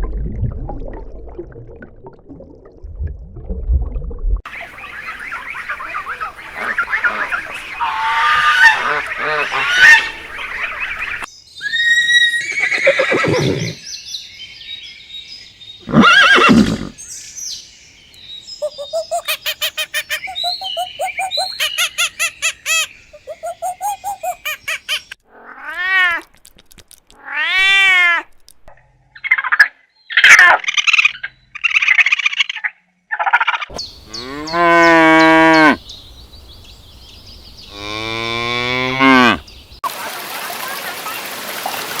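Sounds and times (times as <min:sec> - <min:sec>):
farm animal calls: 0:04.5 - 0:13.7, 0:18.6 - 0:25.2, 0:33.7 - 0:35.9
drawn-out rising and falling calls: 0:04.5 - 0:13.8, 0:18.5 - 0:25.2, 0:33.7 - 0:42.0.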